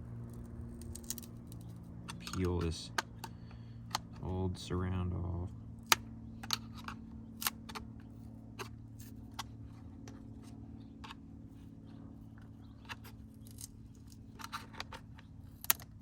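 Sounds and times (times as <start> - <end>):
steady low hum: 0.0 - 16.0
small clicks and crackles: 0.1 - 4.2, 11.8 - 16.0.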